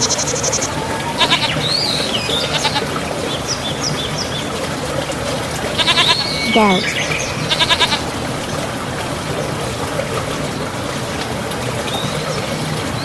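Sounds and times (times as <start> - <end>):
running water: 0.0 - 13.0
goat bleating: 1.0 - 1.6, 5.8 - 6.6, 7.5 - 8.0.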